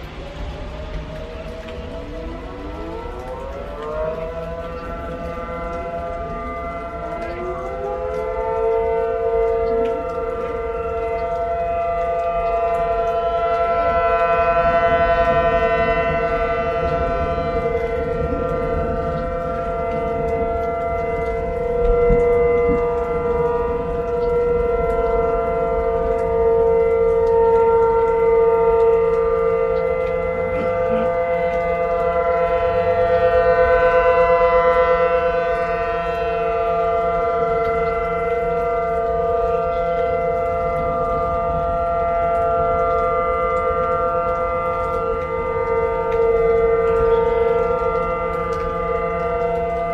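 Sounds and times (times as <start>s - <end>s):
warning sirens steady tone: 0.0s - 49.9s.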